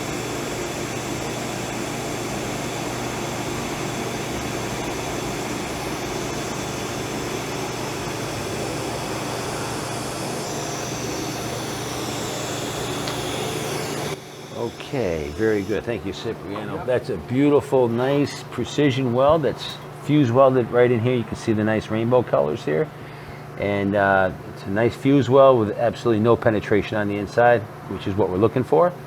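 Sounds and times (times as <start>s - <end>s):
welding arc hissing buzz: 0.0s - 18.3s.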